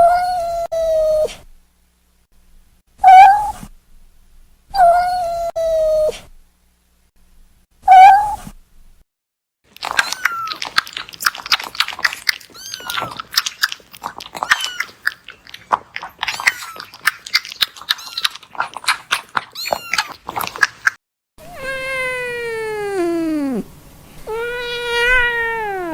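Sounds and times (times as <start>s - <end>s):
kitten chewing clicks: 9.7s - 21.0s
kitten meowing: 12.5s - 13.2s, 14.4s - 14.9s, 19.6s - 20.1s, 21.4s - 23.6s, 24.3s - 25.9s.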